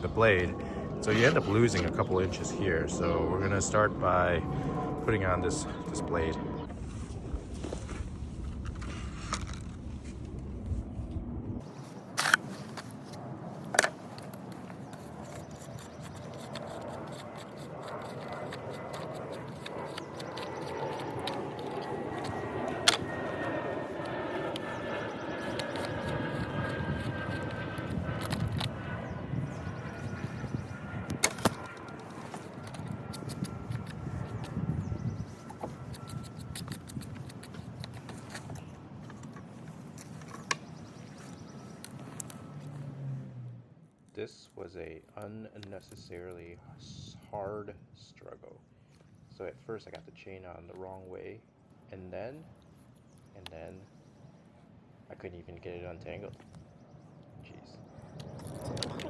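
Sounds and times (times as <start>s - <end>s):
sharp clicks: 14.9s - 23.1s, 25.3s - 28.8s
chainsaw chain ticking and scraping: 15.0s - 22.3s.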